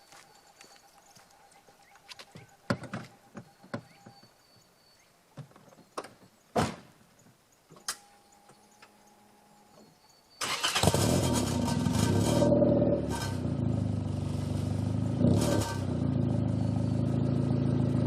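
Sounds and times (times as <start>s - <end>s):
car engine starting and running: 10.4s - 18.0s.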